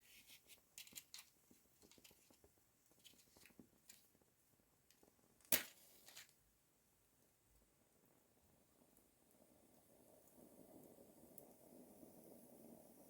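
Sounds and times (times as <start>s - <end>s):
matchbox clicks and rustles: 0.2s - 2.4s, 5.4s - 6.4s
match struck against box: 5.5s - 6.4s.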